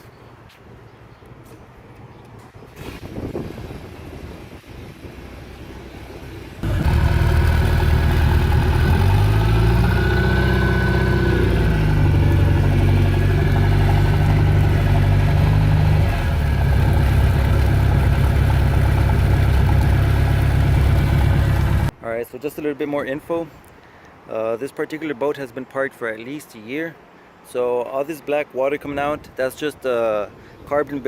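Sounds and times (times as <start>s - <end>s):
boat engine starting and running: 5.8s - 21.9s.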